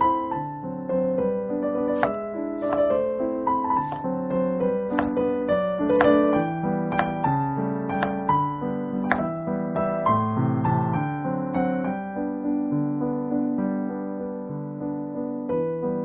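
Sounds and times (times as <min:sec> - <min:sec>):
piano music: 0:00.0 - 0:16.0.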